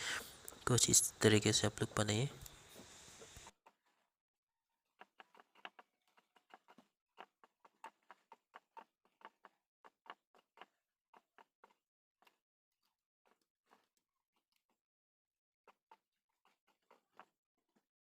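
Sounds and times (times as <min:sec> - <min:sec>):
thread wrapping ticks and rustles: 0:04.9 - 0:14.8.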